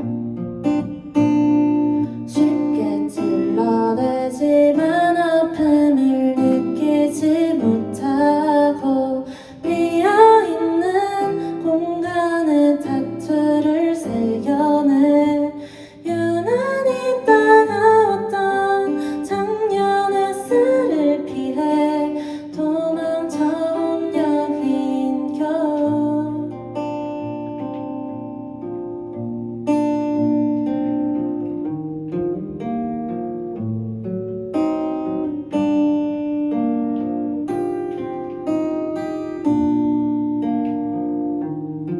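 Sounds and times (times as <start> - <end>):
acoustic guitar: 0.0 - 41.9
person singing: 2.1 - 26.7.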